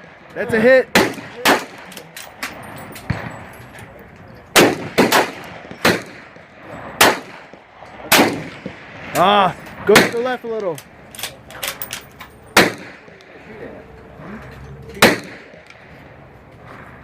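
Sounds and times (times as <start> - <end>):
gunshots: 0.6 - 2.2, 4.5 - 9.2, 9.9 - 10.4, 12.6 - 13.4, 15.0 - 15.8.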